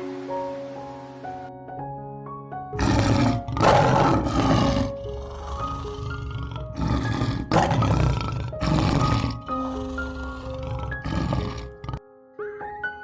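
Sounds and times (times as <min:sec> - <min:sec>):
large animal roaring: 0:02.8 - 0:12.0.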